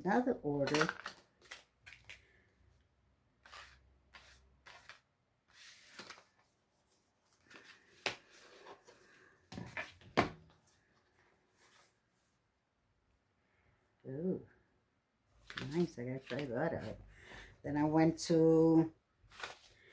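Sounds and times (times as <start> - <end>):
packaging rustling: 0.6 - 2.4.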